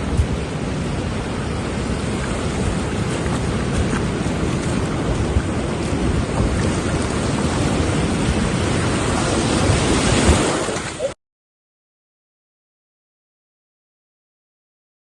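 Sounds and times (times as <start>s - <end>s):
wind buffeting microphone: 0.0s - 11.1s
surf washing on shore: 0.0s - 11.2s.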